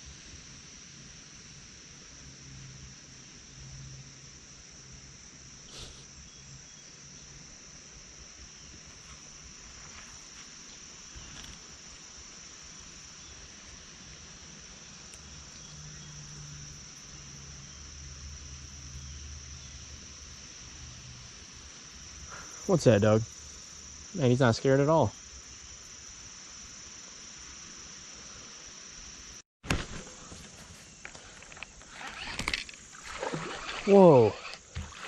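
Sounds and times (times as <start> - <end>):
insects buzzing: 0.0 - 35.0.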